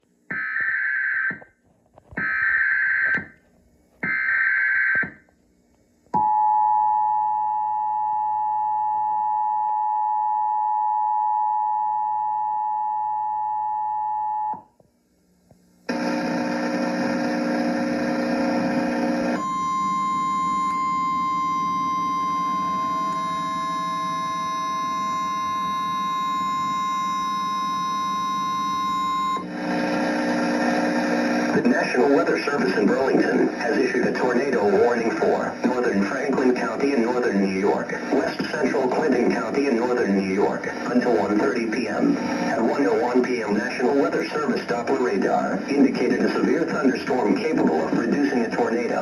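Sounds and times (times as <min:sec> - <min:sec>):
steady tone: 0:16.9 - 0:47.0
two-tone attention signal: 0:19.4 - 0:29.5
harsh noise burst: 0:29.4 - 0:49.0.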